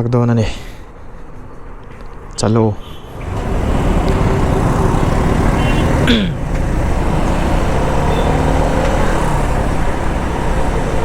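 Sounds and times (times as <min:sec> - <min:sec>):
wind and road noise: 0:00.0 - 0:11.0
motorcycle engine riding: 0:03.1 - 0:11.0.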